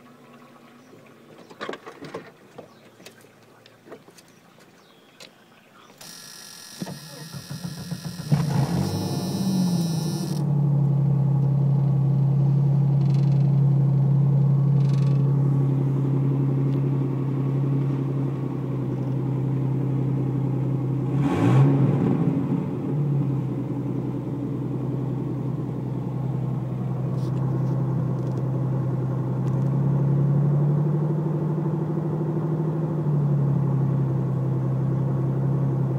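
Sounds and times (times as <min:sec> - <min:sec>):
car engine idling: 0:05.8 - 0:21.1, 0:22.6 - 0:30.6, 0:31.3 - 0:35.9.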